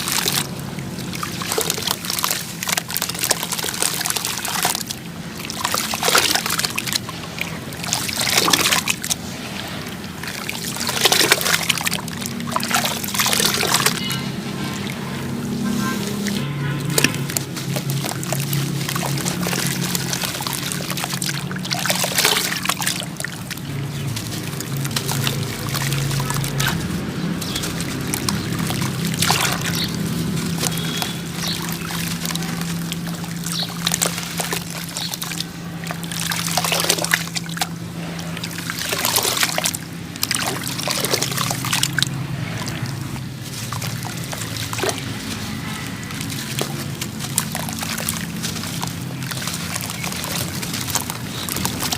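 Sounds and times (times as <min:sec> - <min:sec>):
chunks crumbling in water: 0:00.0 - 0:51.9
water trickles and splashes: 0:00.0 - 0:51.9.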